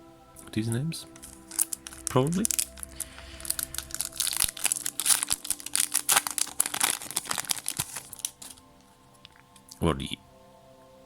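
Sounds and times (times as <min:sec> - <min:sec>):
foil wrapper crinkling and tearing: 0:01.2 - 0:09.4.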